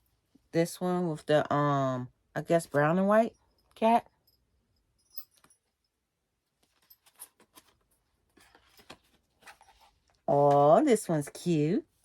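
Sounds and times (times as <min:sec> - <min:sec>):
photo cards being flipped: 0:06.6 - 0:10.6.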